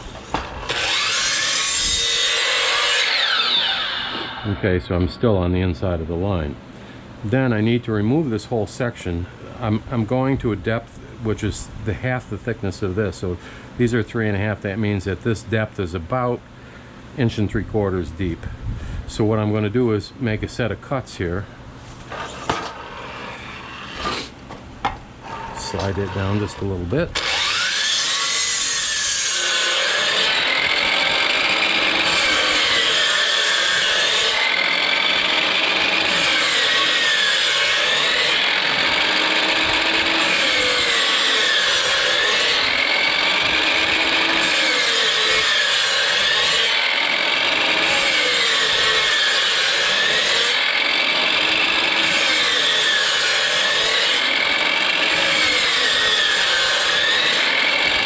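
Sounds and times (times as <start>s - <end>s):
power saw cutting wood: 0.0s - 5.0s, 22.1s - 24.4s, 25.2s - 58.0s.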